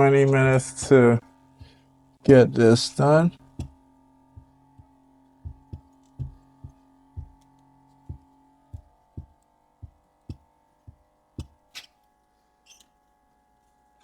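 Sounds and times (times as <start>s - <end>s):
machine humming: 0.0s - 14.0s
soft low thumps: 1.5s - 11.7s.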